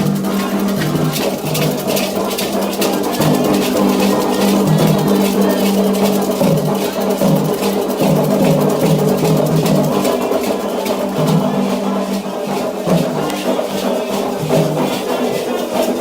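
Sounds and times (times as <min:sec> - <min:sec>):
drums and hand percussion: 0:00.0 - 0:16.0
held notes shifting in pitch: 0:02.4 - 0:08.3, 0:09.2 - 0:14.2.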